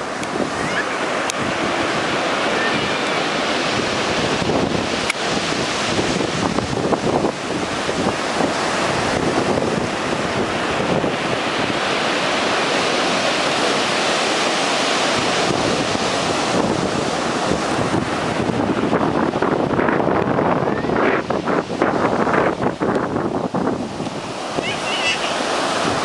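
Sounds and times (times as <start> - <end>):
ocean surf washing ashore: 0.0 - 26.0
wind on microphone: 0.0 - 26.0.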